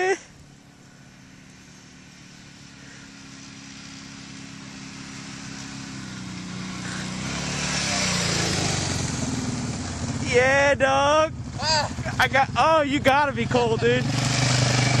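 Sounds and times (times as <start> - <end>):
atv engine approaching: 0.0 - 15.0.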